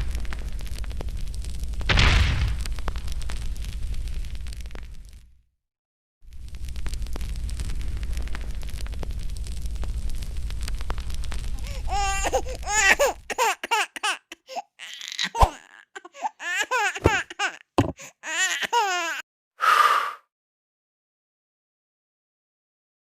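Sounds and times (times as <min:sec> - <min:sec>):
low rumbling noise: 0:06.3 - 0:12.7.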